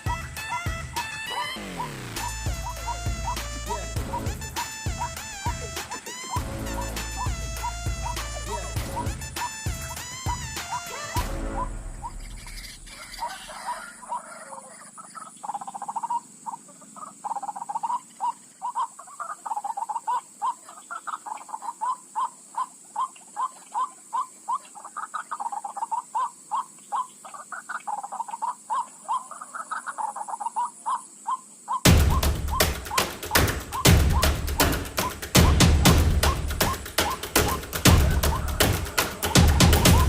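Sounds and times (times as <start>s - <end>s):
loud thumping beats: 0.0s - 12.4s, 31.9s - 40.0s
waterhen croaking calls: 0.0s - 40.0s.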